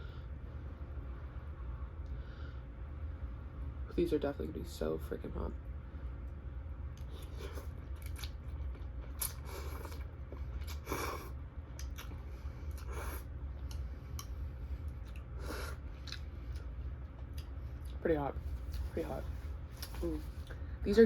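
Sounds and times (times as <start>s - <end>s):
crunchy eating and chewing: 6.9s - 20.6s.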